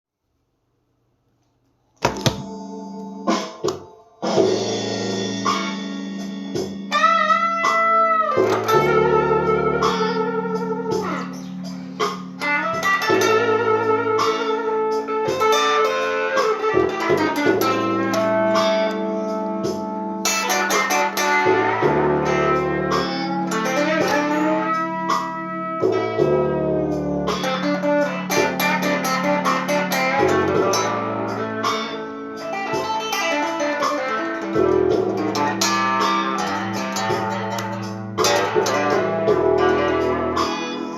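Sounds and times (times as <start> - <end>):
blues guitar lead: 2.0 - 40.9
bass line: 8.2 - 15.5, 16.6 - 33.0, 33.9 - 40.9.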